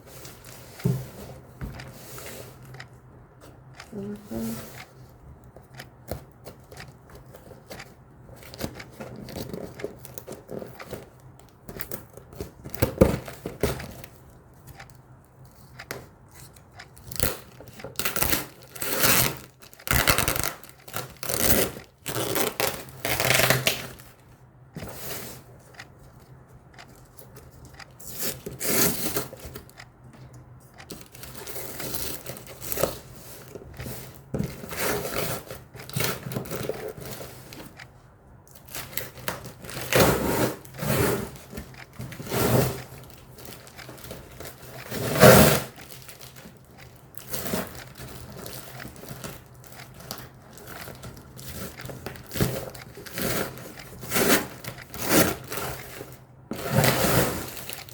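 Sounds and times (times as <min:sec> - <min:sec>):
packaging tearing and crinkling: 0:18.0 - 0:23.8.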